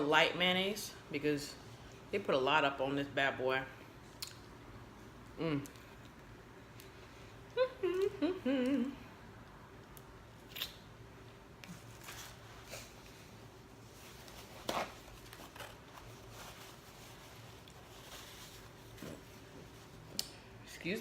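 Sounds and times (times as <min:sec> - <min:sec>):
woman humming mmm: 0:07.5 - 0:09.2.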